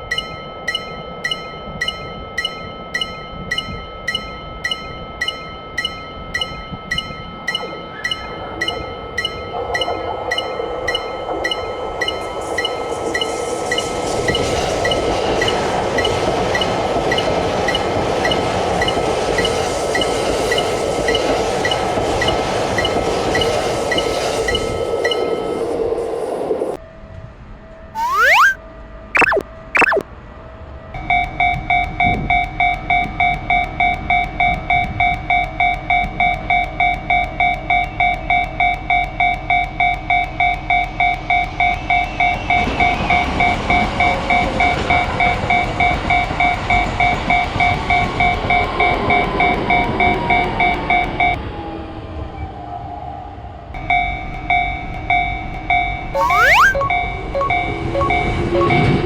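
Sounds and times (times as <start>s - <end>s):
train running past: 7.5s - 27.0s, 41.1s - 55.8s
level-crossing bell ringing: 56.2s - 59.0s.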